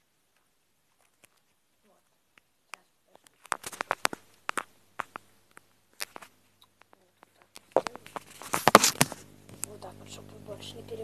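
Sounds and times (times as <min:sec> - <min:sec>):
handling noise clicks and rustles: 0:00.3 - 0:01.6, 0:02.3 - 0:09.8.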